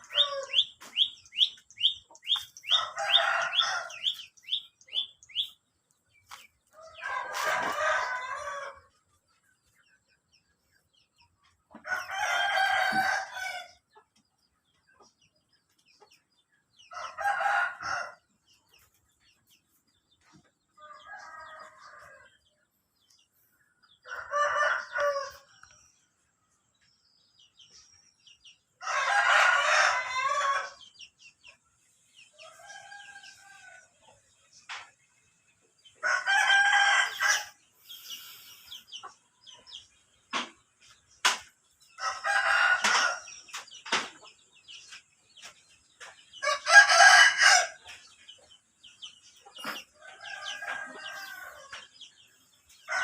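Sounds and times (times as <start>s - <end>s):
bird chirps: 0.0s - 6.5s.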